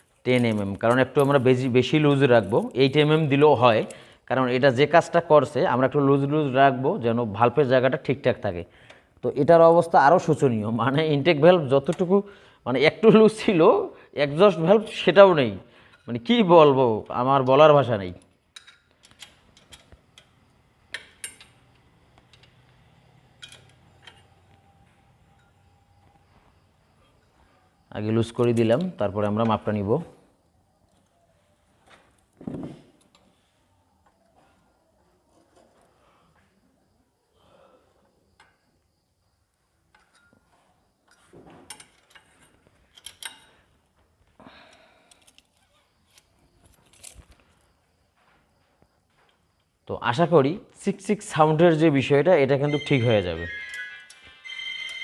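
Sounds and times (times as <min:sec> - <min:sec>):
metallic tool clicks and clinks: 0:18.5 - 0:20.3, 0:23.4 - 0:24.3, 0:42.9 - 0:43.5
hand tools clinking on metal: 0:23.4 - 0:24.3.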